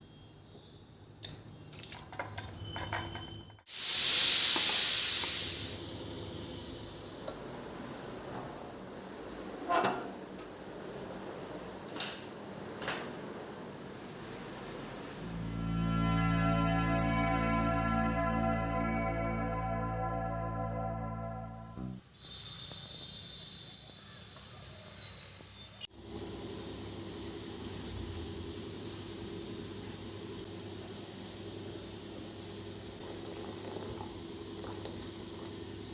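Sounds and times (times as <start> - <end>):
food sizzling in hot oil: 3.7 - 6.9
background music: 15.2 - 22.0.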